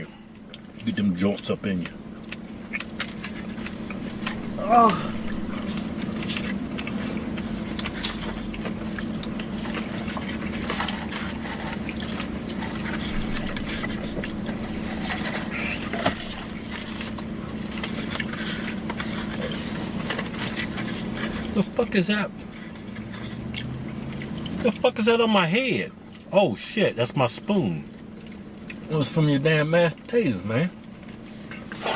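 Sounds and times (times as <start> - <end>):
steady low hum: 0.0 - 31.9
food containers and utensils rustling: 1.6 - 24.7, 30.9 - 31.9.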